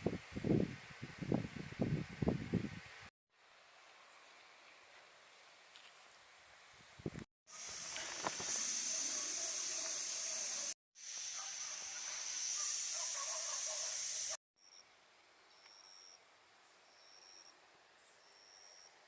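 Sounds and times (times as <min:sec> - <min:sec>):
compressed air hissing: 0:07.5 - 0:14.4.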